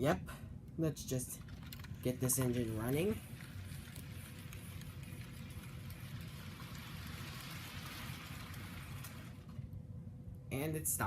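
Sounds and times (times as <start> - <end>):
model train motor humming: 2.0 - 9.6.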